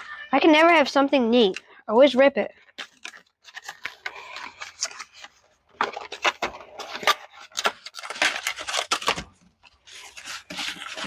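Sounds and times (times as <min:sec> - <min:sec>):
packaging crinkling: 0:02.6 - 0:11.0
cardboard and paper tearing: 0:02.8 - 0:11.0.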